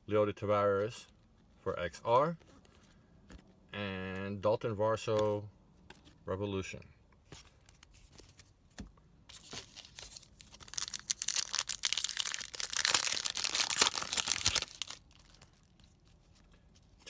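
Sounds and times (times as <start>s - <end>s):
wrapper tearing and crinkling: 9.4s - 15.9s.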